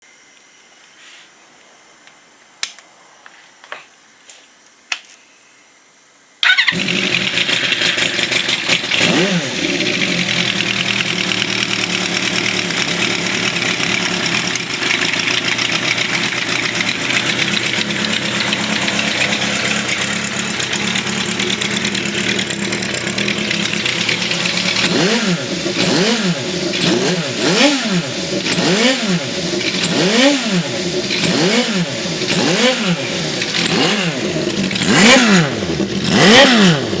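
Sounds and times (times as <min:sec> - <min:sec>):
motorcycle engine idling and revving: 0:06.4 - 0:37.0.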